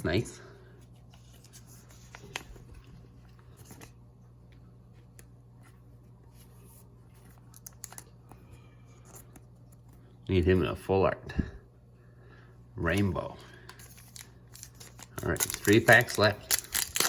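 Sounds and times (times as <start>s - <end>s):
steady low hum: 0.0s - 17.0s
cards clicking and rustling: 1.1s - 2.9s, 7.2s - 10.0s, 12.9s - 17.0s.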